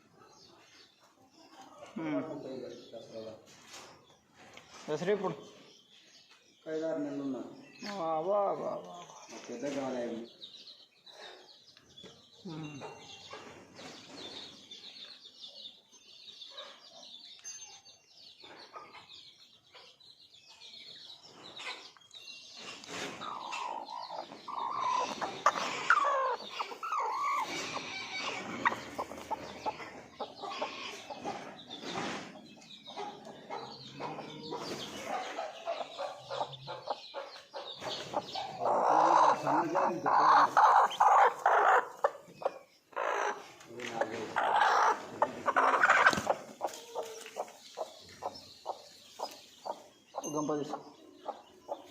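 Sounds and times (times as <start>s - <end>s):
chickens clucking: 0.0s - 51.9s.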